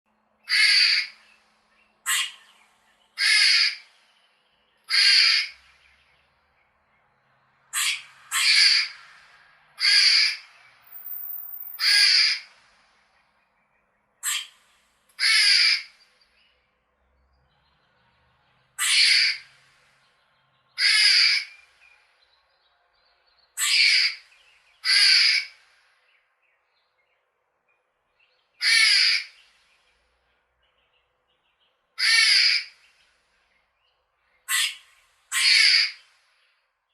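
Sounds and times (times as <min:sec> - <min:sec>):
squirrel barking: 0:00.4 - 0:01.2, 0:02.1 - 0:02.5, 0:03.2 - 0:03.9, 0:04.9 - 0:05.6, 0:07.7 - 0:09.0, 0:09.8 - 0:12.5, 0:14.2 - 0:14.6, 0:15.2 - 0:15.9, 0:18.8 - 0:19.4, 0:20.8 - 0:21.6, 0:23.6 - 0:24.2, 0:24.8 - 0:25.6, 0:28.6 - 0:29.4, 0:32.0 - 0:32.8, 0:34.5 - 0:36.0.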